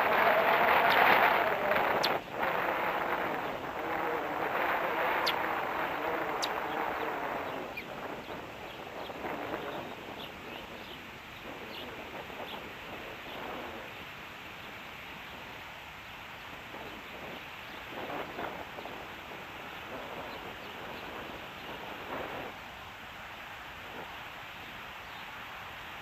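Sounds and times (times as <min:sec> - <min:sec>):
steady background hiss: 0:00.0 - 0:26.0
bird high-pitched calls: 0:05.2 - 0:12.6.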